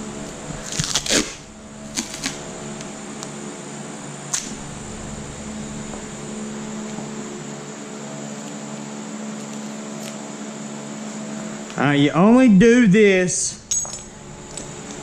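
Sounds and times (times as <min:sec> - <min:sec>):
steady machine hum: 0:00.0 - 0:15.0
clicks and knocks of parts handled: 0:13.6 - 0:15.0.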